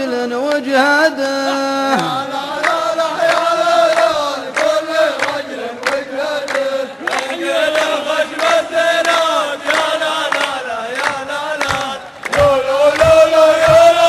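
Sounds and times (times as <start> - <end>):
voices chanting a sung refrain: 0.0 - 14.0
sharp struck beats: 11.7 - 14.0.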